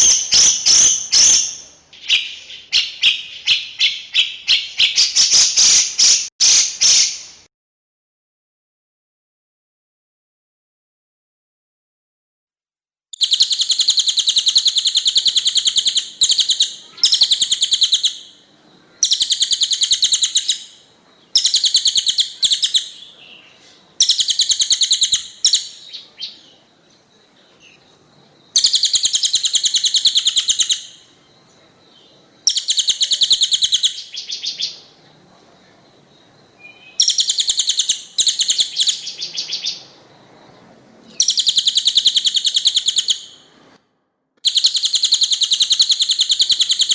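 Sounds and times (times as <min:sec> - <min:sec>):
songbird rattling song: 0:00.0 - 0:07.4, 0:13.2 - 0:18.4, 0:19.0 - 0:23.1, 0:23.9 - 0:26.6, 0:28.5 - 0:31.1, 0:32.4 - 0:35.0, 0:36.6 - 0:40.0, 0:40.6 - 0:43.5, 0:44.4 - 0:46.9.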